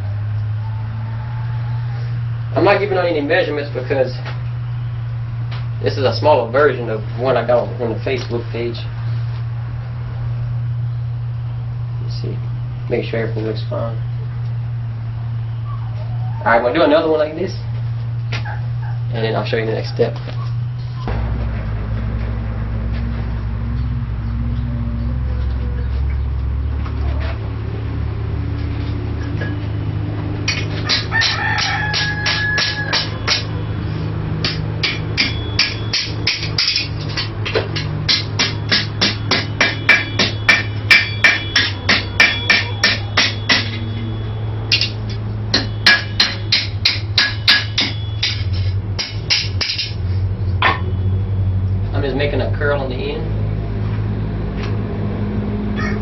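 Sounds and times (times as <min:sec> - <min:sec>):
rooster crowing: 0:00.0 - 0:02.5, 0:15.2 - 0:16.7, 0:29.7 - 0:34.4, 0:38.5 - 0:44.6, 0:55.4 - 0:56.0
steady low hum: 0:00.0 - 0:56.0
hammer striking steel on anvil: 0:30.5 - 0:33.6, 0:34.4 - 0:50.9.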